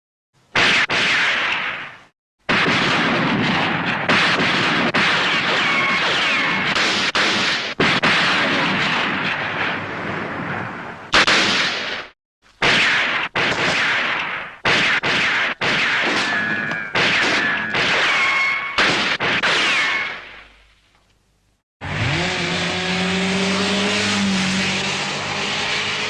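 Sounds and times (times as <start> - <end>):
gunshots with ringing decay: 0.5 - 20.7.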